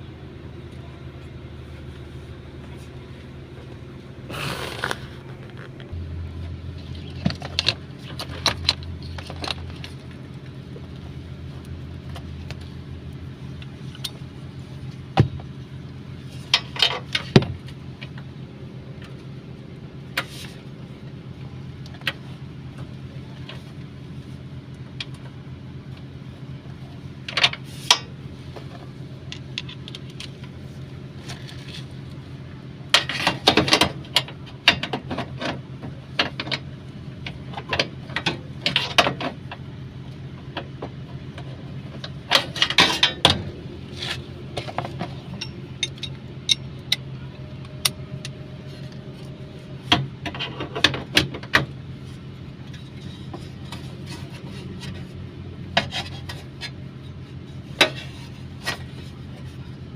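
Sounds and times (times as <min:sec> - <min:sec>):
steady low hum: 0:00.0 - 0:59.9
metal parts clinking and rattling: 0:44.0 - 0:47.1.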